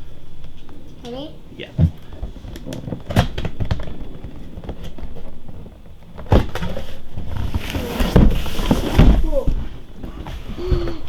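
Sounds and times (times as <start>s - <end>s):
cardboard box rustling and scraping: 2.2s - 11.0s.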